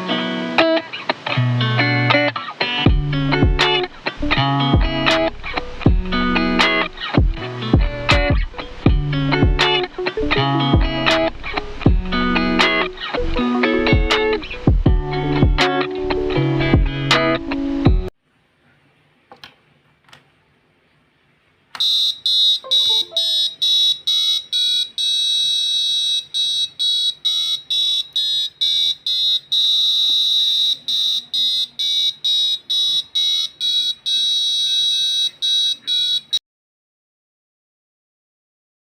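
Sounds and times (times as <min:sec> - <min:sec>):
faint stepping melody: 0:02.8 - 0:18.1, 0:22.6 - 0:23.5
shrill beeping ringtone: 0:21.8 - 0:36.4.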